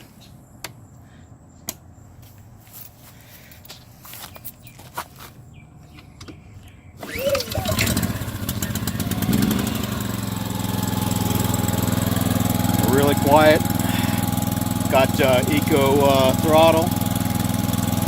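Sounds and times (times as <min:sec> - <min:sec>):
generator engine running: 0:07.0 - 0:18.0.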